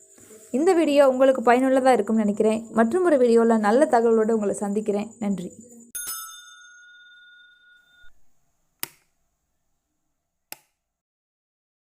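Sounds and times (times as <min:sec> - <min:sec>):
ringing ding tone: 0:05.9 - 0:08.2.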